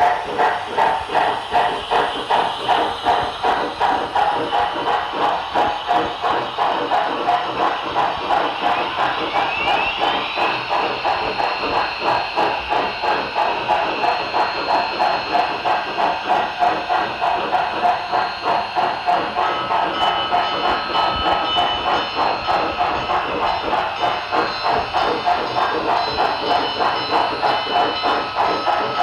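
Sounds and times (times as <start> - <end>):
model steam locomotive chuffing: 0.0 - 29.0.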